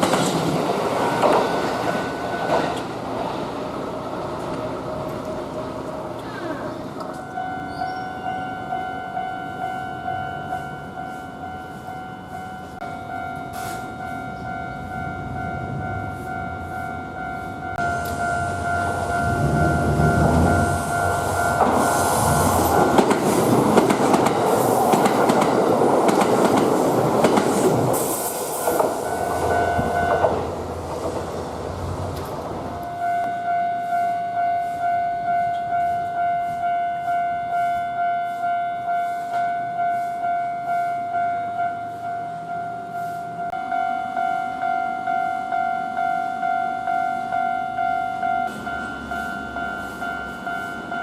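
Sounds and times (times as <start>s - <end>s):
train wheels clattering on rails: 0.0s - 3.4s, 17.7s - 41.0s
level crossing bell ringing: 7.1s - 23.0s, 29.0s - 30.5s, 32.8s - 51.0s.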